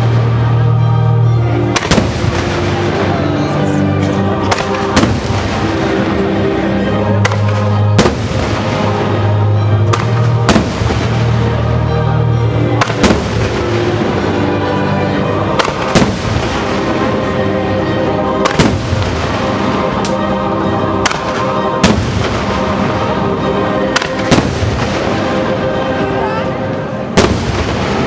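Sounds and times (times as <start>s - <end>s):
firework bangs: 1.7s - 3.5s, 4.4s - 6.2s, 7.2s - 9.3s, 9.9s - 11.4s, 12.8s - 17.4s, 18.4s - 20.2s, 21.0s - 23.1s, 23.9s - 25.6s, 27.1s - 28.0s.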